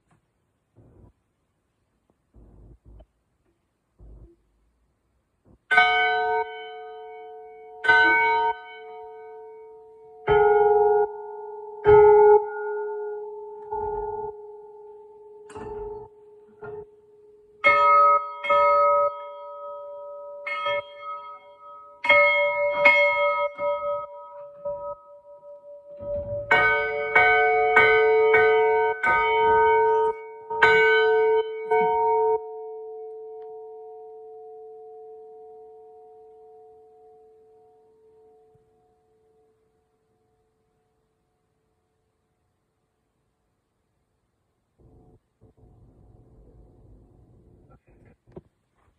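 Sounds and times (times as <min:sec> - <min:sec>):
church bell ringing: 0:05.7 - 0:40.1.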